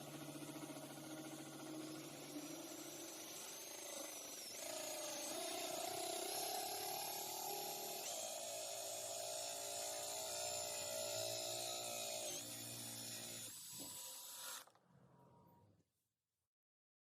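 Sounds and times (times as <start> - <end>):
electric drill whining: 0.0 - 14.8.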